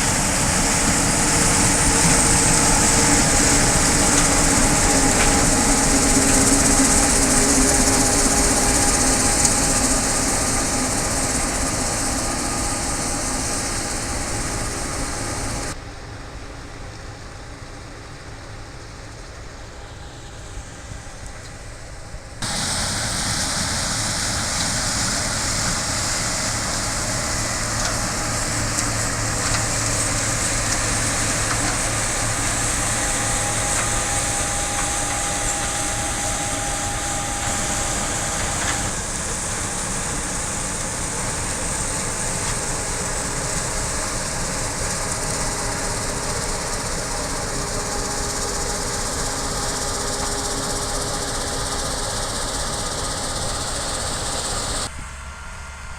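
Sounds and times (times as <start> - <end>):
deep engine hum: 0.0 - 16.0
loud mechanical hiss: 0.0 - 16.8, 17.4 - 55.2.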